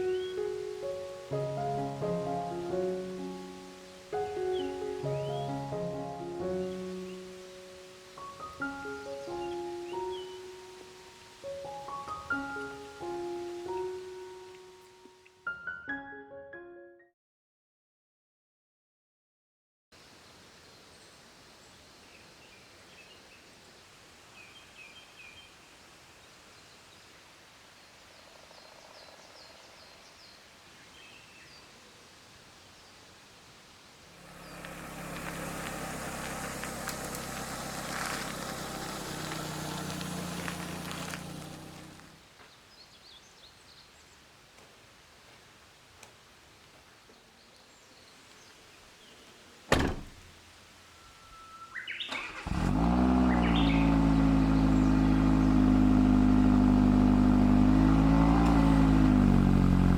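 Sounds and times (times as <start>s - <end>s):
low engine-like hum: 34.2s - 42.2s, 52.2s - 59.9s
loud thud: 49.7s - 50.2s.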